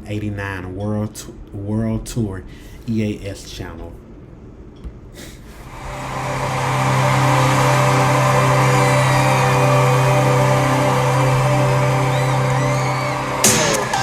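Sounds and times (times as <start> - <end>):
stadium crowd screaming and cheering: 5.7 - 14.0
low synth drone: 5.8 - 14.0.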